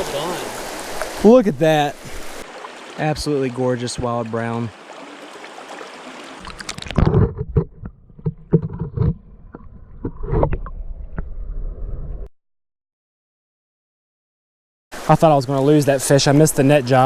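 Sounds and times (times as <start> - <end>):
creek water rushing: 0.0 - 7.1, 15.0 - 17.0
water sloshing: 0.0 - 10.8.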